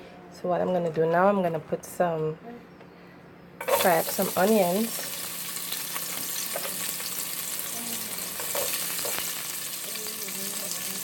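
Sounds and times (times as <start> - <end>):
onions sizzling in hot oil: 3.6 - 11.0.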